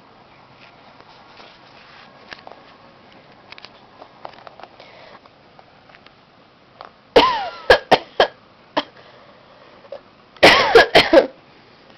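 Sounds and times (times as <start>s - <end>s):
woman coughing: 7.2s - 9.0s, 10.4s - 11.4s.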